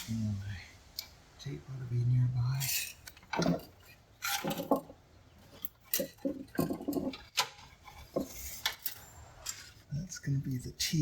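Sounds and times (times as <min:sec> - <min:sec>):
small tools clinking and knocking: 0:02.5 - 0:09.9.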